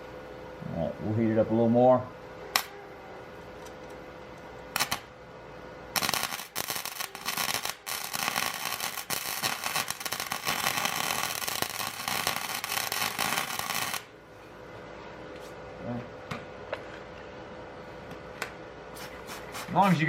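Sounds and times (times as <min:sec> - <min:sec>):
welder arc crackling: 0:02.5 - 0:02.7, 0:03.6 - 0:05.1, 0:05.9 - 0:14.2.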